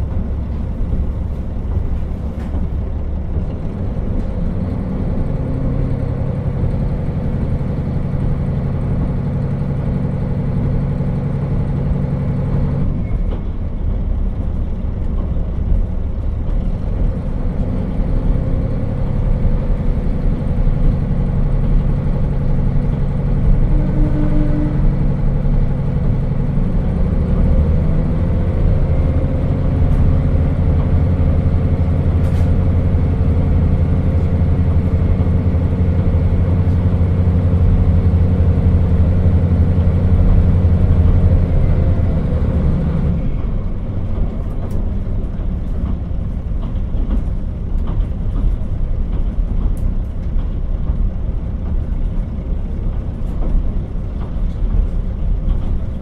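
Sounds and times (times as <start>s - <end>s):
diesel railcar engine: 0.0s - 56.0s
train wheels rumbling on rail: 0.0s - 56.0s.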